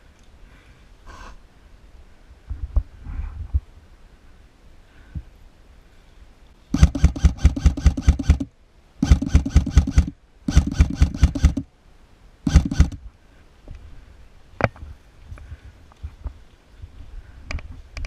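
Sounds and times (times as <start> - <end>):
airsoft rifle full-auto bursts: 6.7 - 11.7, 12.5 - 13.0.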